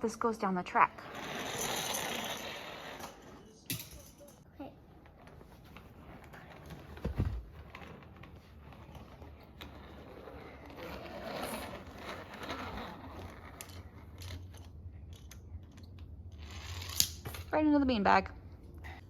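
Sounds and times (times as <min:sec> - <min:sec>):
toy truck rolling on track: 0:01.0 - 0:03.5, 0:07.7 - 0:17.2
dull thump: 0:07.0 - 0:07.6.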